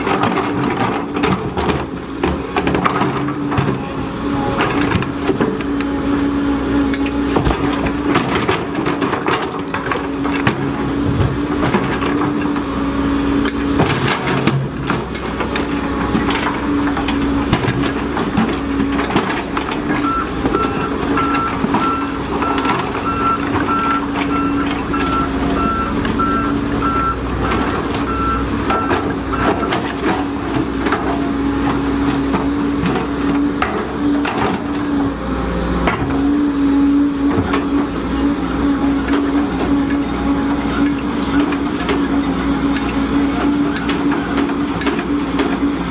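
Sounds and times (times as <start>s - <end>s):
knocks and clatter: 0.0s - 3.8s, 13.4s - 34.8s
excavator diesel engine running: 0.0s - 45.9s
travel alarm beeping: 20.0s - 27.2s, 28.1s - 28.9s.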